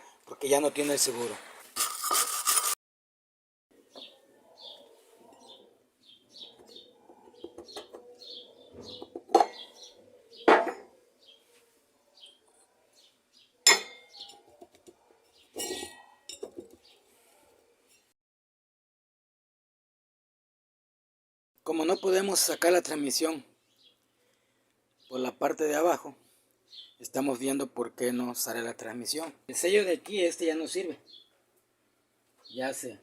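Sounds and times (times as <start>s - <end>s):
metal tool clinking: 1.8s - 2.8s, 15.6s - 16.6s
birds chirping: 3.8s - 17.2s, 26.6s - 27.3s, 30.5s - 31.4s.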